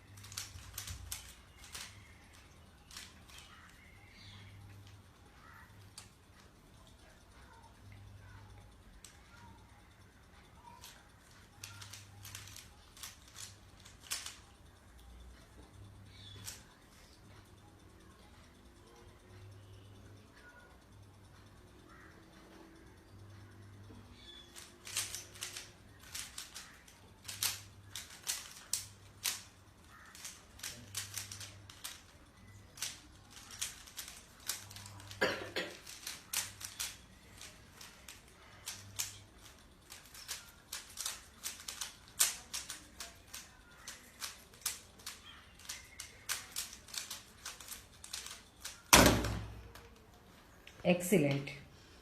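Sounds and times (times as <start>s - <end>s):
puzzle cube plastic clicks: 0.0s - 6.1s, 10.7s - 14.5s, 24.1s - 50.0s.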